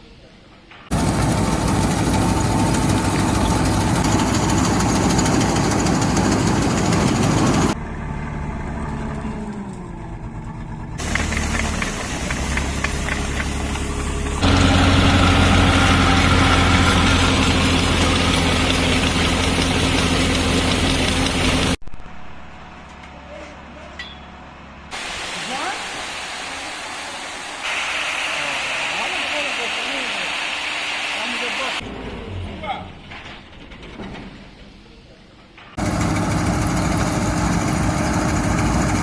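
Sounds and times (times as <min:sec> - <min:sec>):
farm machinery engine running: 0:00.9 - 0:21.8, 0:35.8 - 0:39.0.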